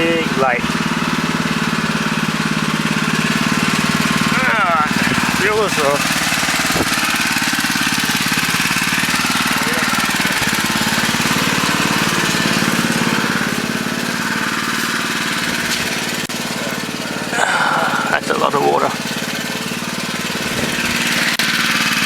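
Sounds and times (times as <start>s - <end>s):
small petrol engine chugging: 0.0s - 22.0s.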